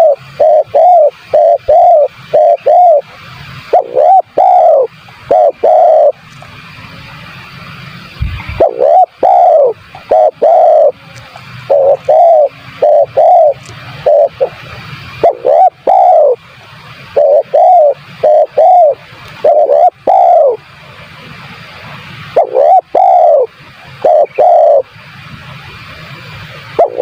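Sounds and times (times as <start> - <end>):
dove cooing: 0.0 - 3.1, 3.7 - 6.2, 8.4 - 14.6, 15.2 - 16.4, 17.1 - 20.7, 22.3 - 24.9, 26.8 - 27.0.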